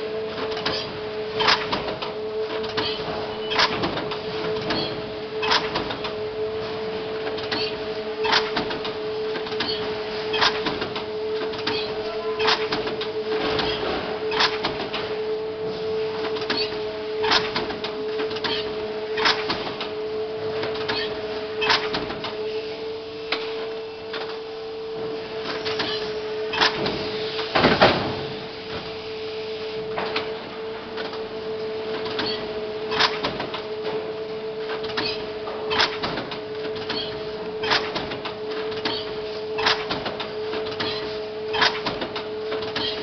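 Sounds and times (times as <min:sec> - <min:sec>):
machine clicks and knocks: 0:01.4 - 0:06.2, 0:07.2 - 0:15.1, 0:16.2 - 0:19.9, 0:20.6 - 0:22.4, 0:25.5 - 0:27.0, 0:31.9 - 0:34.0, 0:34.7 - 0:43.0
machine clatter: 0:34.7 - 0:43.0.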